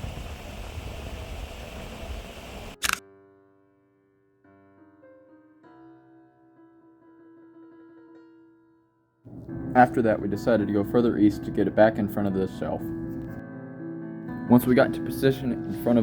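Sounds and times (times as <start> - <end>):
steady rushing noise: 0.0 - 2.8
soft keyboard music: 3.0 - 16.0.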